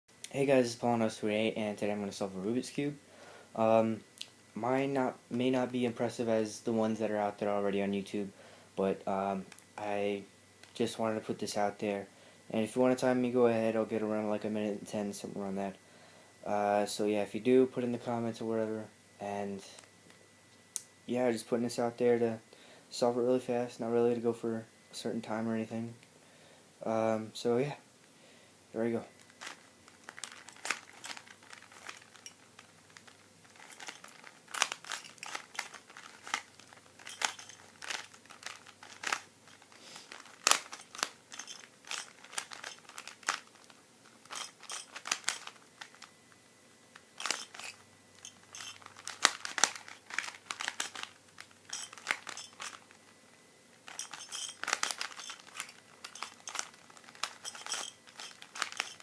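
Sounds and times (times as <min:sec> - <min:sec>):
puzzle cube clicking: 0:33.0 - 0:46.1, 0:47.1 - 0:52.9, 0:53.9 - 0:59.0.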